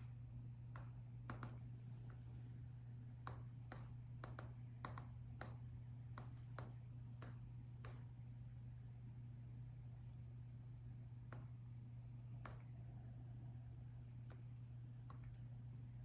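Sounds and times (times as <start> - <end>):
steady low hum: 0.0 - 16.0
laptop keyboard keystrokes: 0.7 - 1.7, 3.2 - 8.1, 11.2 - 11.6, 12.4 - 12.7.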